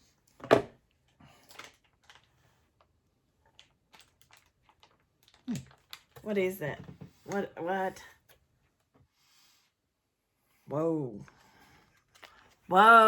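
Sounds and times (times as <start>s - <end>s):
small crinkles and clicks: 0.9s - 6.3s, 11.8s - 12.6s
plastic packet crackle: 3.4s - 6.2s.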